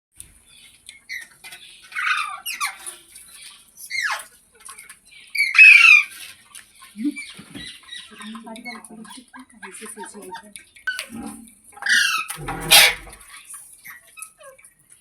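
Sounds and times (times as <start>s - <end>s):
parrot squawking: 5.4s - 6.2s, 9.4s - 13.2s.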